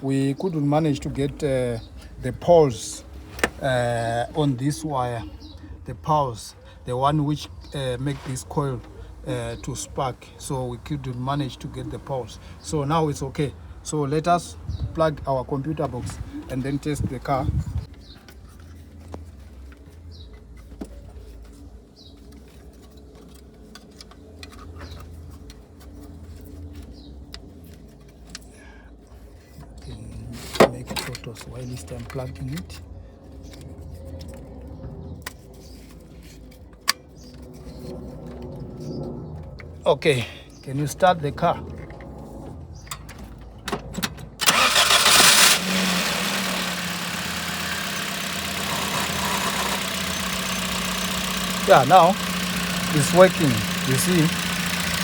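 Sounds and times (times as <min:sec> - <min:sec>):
car starter cranking: 0:44.3 - 0:55.0
car engine idling: 0:44.4 - 0:55.0.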